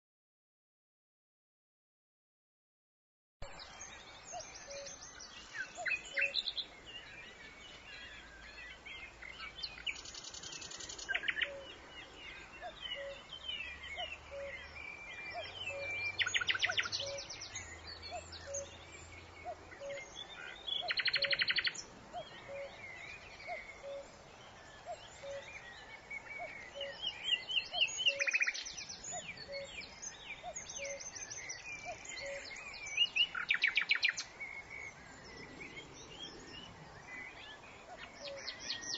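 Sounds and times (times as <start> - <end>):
nightingale singing: 3.4 - 38.9
cuckoo calling: 10.2 - 11.8, 20.8 - 24.2, 26.3 - 31.2, 31.8 - 34.3.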